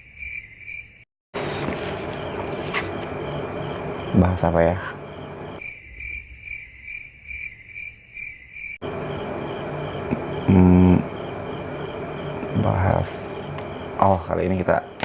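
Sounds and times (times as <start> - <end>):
crickets chirping: 0.0 - 15.0
short low hum: 8.8 - 14.1.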